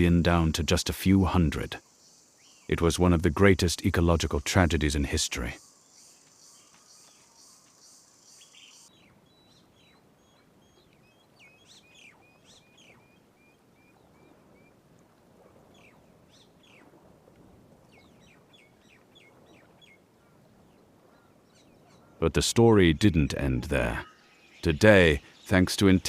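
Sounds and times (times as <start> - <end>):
small birds chirping: 0.0 - 14.8, 15.7 - 16.9, 17.8 - 26.0
high insect trill: 0.1 - 8.8.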